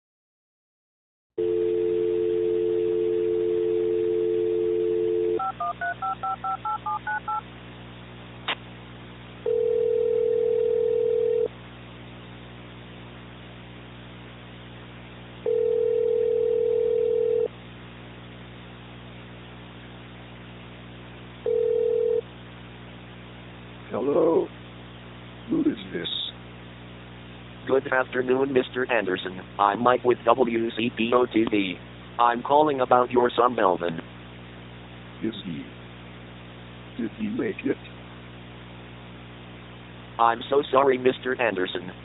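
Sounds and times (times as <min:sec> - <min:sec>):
telephone dial tone: 0:01.4 - 0:07.4, 0:09.5 - 0:11.5, 0:15.5 - 0:17.5, 0:21.5 - 0:22.2
telephone ringback tone: 0:01.4 - 0:07.4, 0:09.4 - 0:11.5, 0:15.5 - 0:17.5, 0:21.5 - 0:22.2.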